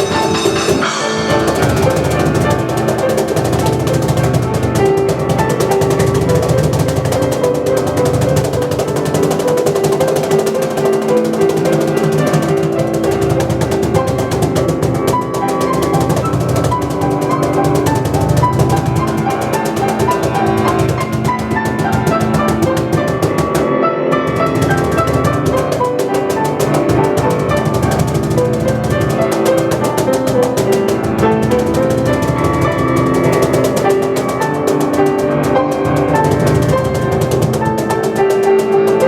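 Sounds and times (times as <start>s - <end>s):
drums and percussion: 0.0s - 23.6s
fast keyboard melody: 0.0s - 39.0s.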